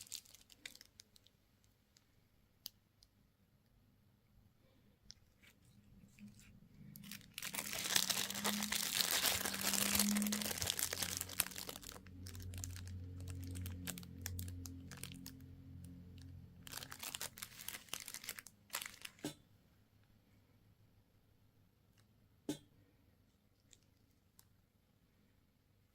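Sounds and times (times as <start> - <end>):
candy wrapper crinkling and tearing: 0.0 - 2.0, 5.1 - 19.2.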